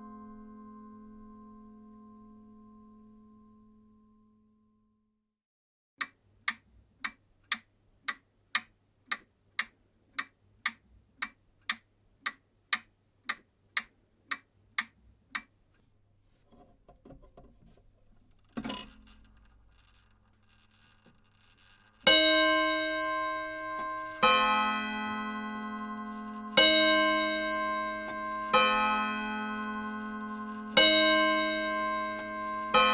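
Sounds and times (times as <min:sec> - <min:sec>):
clock mechanism whirring and clicking: 0:06.0 - 0:15.5, 0:16.6 - 0:32.9
mechanical clock ticking: 0:06.0 - 0:15.8, 0:18.0 - 0:32.9
clock gong striking: 0:22.1 - 0:32.9.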